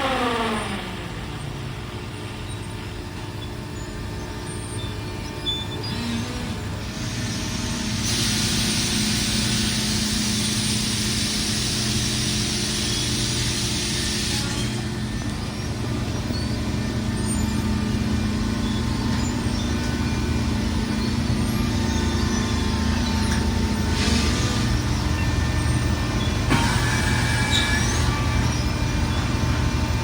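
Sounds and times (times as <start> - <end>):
machinery low hum: 0.0 - 30.0
loud hiss: 7.0 - 14.7.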